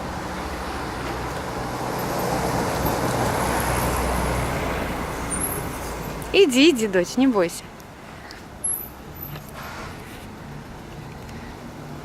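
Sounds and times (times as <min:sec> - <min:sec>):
motor vehicle passing by: 0:00.0 - 0:06.4.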